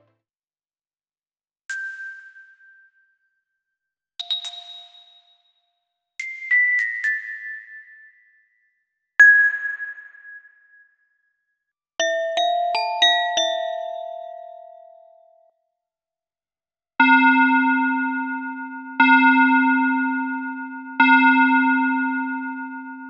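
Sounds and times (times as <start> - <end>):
ding sound effects: 4.2 - 5.6, 12.0 - 15.3.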